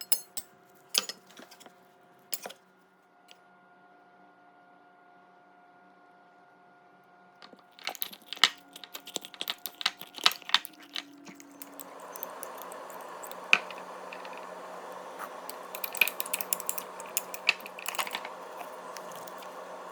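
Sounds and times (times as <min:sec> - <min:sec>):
small hard objects clattering: 0:07.4 - 0:19.9.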